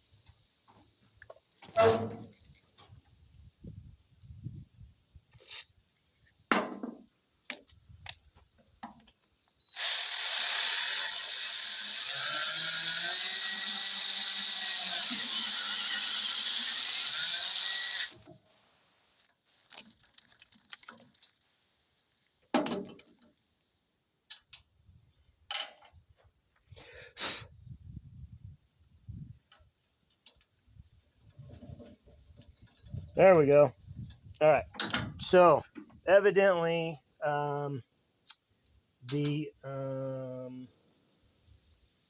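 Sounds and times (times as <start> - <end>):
power drill running: 9.7 - 18.2
tools clicking and knocking: 34.7 - 35.2.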